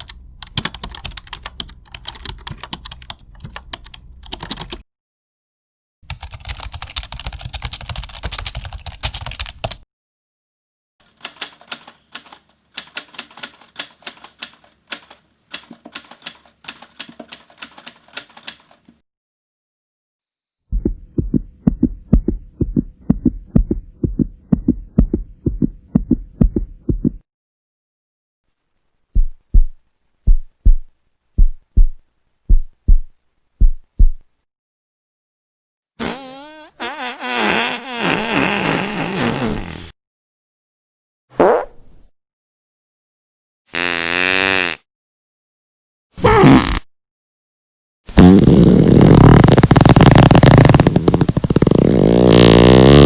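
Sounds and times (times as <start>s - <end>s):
sharp key clacks typing: 0.0s - 4.8s, 6.1s - 9.8s, 11.1s - 18.9s
heartbeat thumps: 20.7s - 27.2s, 29.2s - 34.3s.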